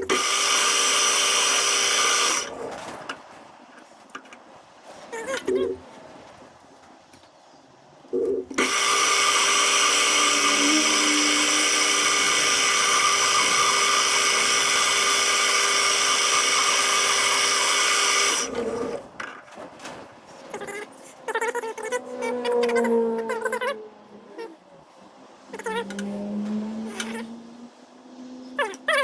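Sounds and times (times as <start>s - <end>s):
power tool motor whining: 0.0s - 2.6s, 8.6s - 19.1s.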